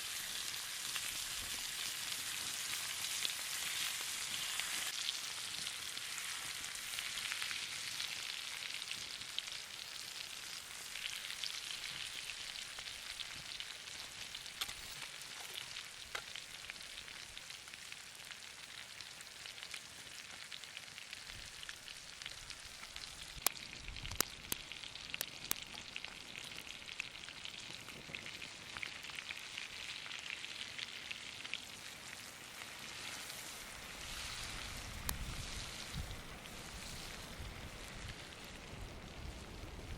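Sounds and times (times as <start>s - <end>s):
steak sizzling in butter: 0.0s - 39.9s.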